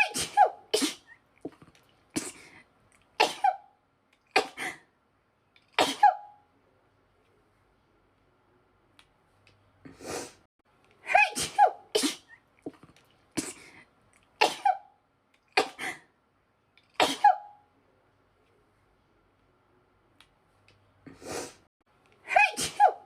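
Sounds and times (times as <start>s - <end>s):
woman sneezing: 0.0s - 1.2s, 3.2s - 3.6s, 4.4s - 4.8s, 5.8s - 6.3s, 11.1s - 12.4s, 14.4s - 14.8s, 17.0s - 17.5s, 22.3s - 23.0s.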